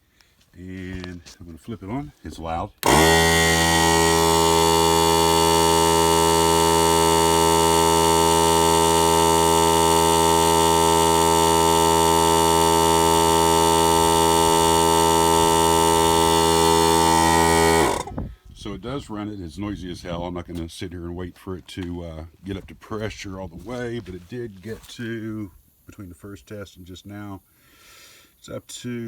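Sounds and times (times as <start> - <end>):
electric air compressor running: 2.8 - 18.3.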